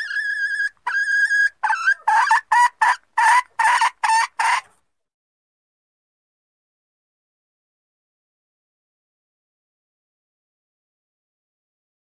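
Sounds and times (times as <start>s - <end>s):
hen calling and clucking: 0.0s - 4.8s.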